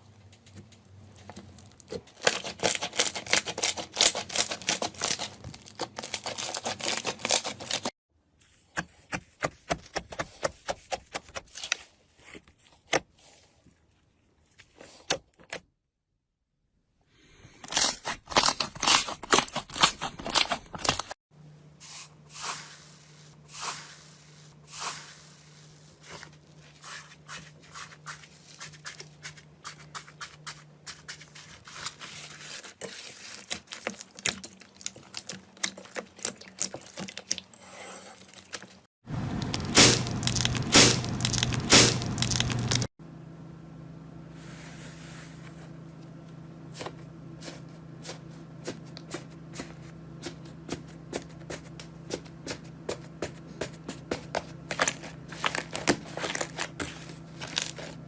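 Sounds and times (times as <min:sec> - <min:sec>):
slime crackling and popping: 0:39.4 - 0:42.9.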